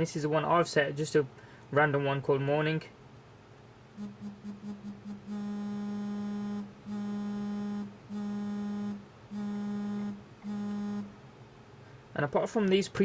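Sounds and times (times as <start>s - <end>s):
phone vibrating against a desk: 4.0s - 11.2s.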